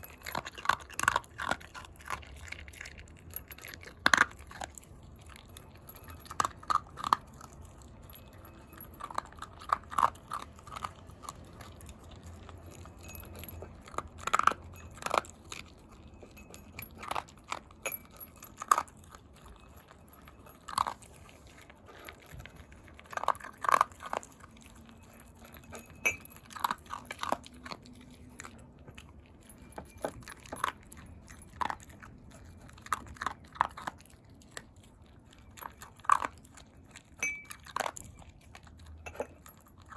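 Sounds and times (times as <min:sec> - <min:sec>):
dog crunching food: 0:00.0 - 0:39.9.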